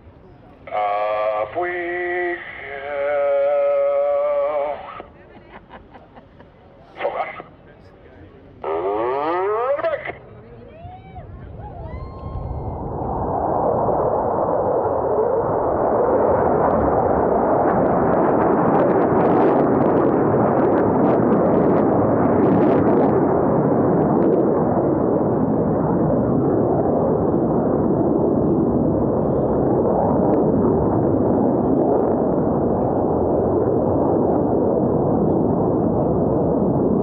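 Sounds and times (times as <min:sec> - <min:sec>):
jet roar with crackling: 0:06.4 - 0:10.3, 0:12.8 - 0:37.0.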